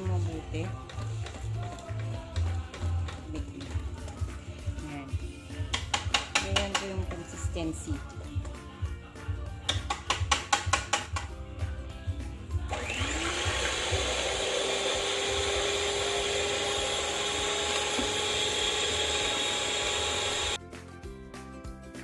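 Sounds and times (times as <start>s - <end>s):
background music with a beat: 0.0s - 22.0s
electric mixer whirring: 12.6s - 20.6s.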